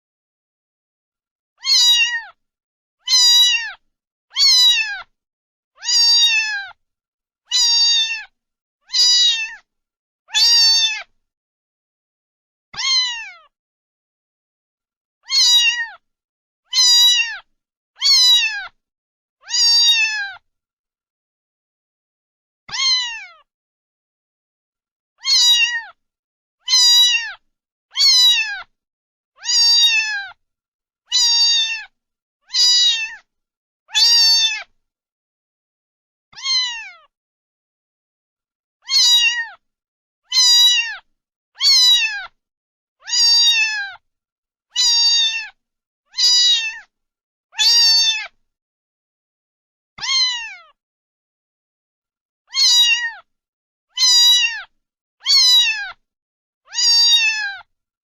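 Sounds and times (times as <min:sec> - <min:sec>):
cat meowing: 0:01.6 - 0:02.4, 0:03.0 - 0:05.1, 0:05.8 - 0:06.8, 0:07.5 - 0:09.7, 0:10.3 - 0:11.1, 0:12.8 - 0:13.5, 0:15.2 - 0:16.0, 0:16.7 - 0:18.8, 0:19.4 - 0:20.4, 0:22.7 - 0:23.5, 0:25.2 - 0:26.0, 0:26.6 - 0:28.7, 0:29.4 - 0:30.4, 0:31.1 - 0:33.3, 0:33.9 - 0:34.7, 0:36.3 - 0:37.1, 0:38.8 - 0:39.6, 0:40.3 - 0:42.4, 0:43.0 - 0:44.0, 0:44.7 - 0:46.9, 0:47.6 - 0:48.4, 0:50.0 - 0:50.8, 0:52.5 - 0:53.3, 0:53.9 - 0:56.0, 0:56.7 - 0:57.7.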